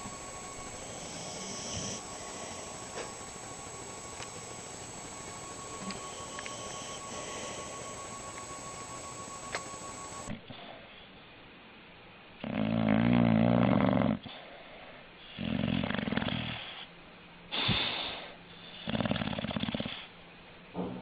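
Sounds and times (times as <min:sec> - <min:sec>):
hissing breath: 0:00.0 - 0:03.4, 0:05.7 - 0:08.3
dog snoring: 0:00.0 - 0:10.9, 0:12.4 - 0:14.6, 0:15.3 - 0:16.9, 0:17.5 - 0:20.1.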